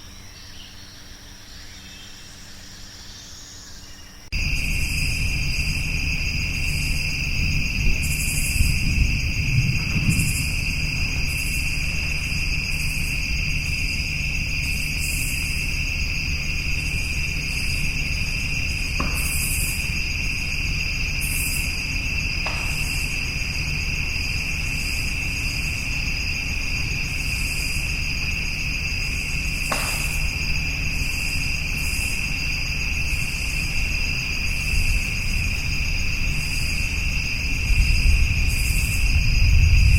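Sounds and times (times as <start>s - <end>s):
higher insect buzz: 0.0s - 39.9s
insects trilling: 0.0s - 39.9s
low rumble: 4.3s - 39.9s.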